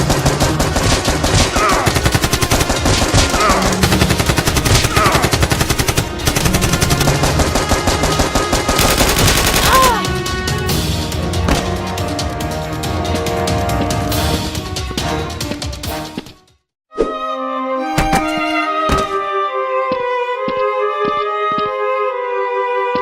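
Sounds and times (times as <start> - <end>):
machine-gun fire: 0.0 - 9.9
action music: 0.0 - 16.6.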